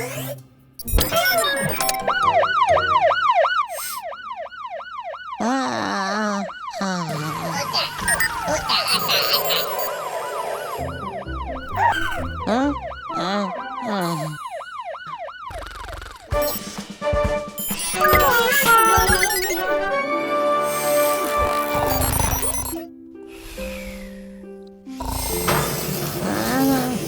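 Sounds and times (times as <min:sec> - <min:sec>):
cartoon sound effects: 0:00.8 - 0:04.1, 0:05.4 - 0:16.7, 0:17.6 - 0:22.9
music: 0:00.9 - 0:03.3, 0:07.9 - 0:14.0, 0:16.3 - 0:27.0
cartoon fire engine siren yelping: 0:01.0 - 0:16.4, 0:17.6 - 0:22.8.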